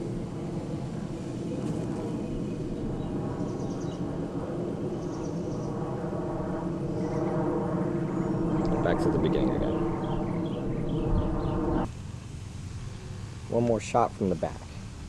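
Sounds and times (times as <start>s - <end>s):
low outdoor background noise: 0.0s - 15.0s.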